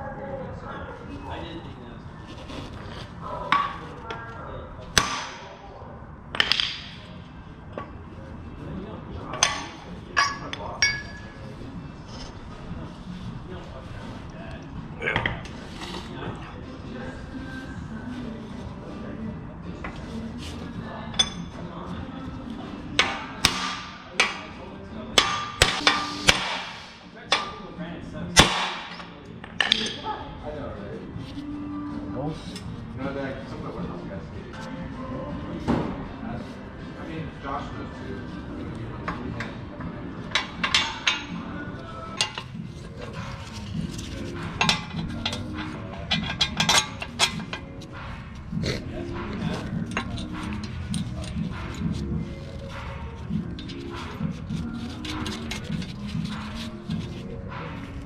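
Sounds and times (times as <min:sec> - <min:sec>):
hammer striking metal: 0:23.0 - 0:24.4, 0:25.2 - 0:27.5, 0:28.4 - 0:29.0.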